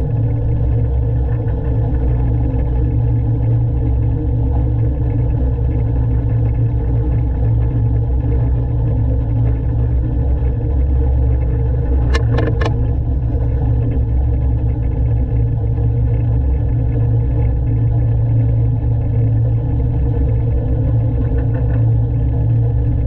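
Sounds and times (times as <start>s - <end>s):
diesel engine running: 8.0s - 23.0s.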